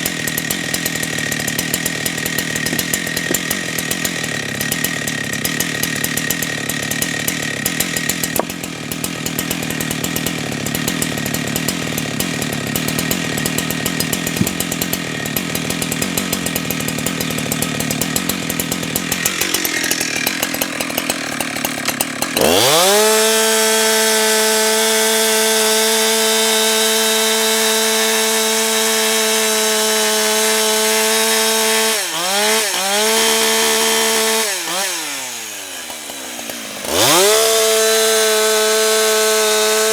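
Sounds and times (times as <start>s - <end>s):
chainsaw cutting log: 0.0s - 39.9s.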